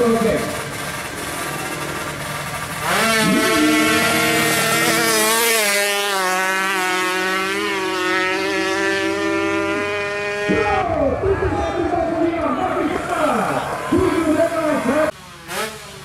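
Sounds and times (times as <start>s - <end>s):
two-stroke engine at high revs: 0.0s - 10.9s, 13.1s - 16.0s.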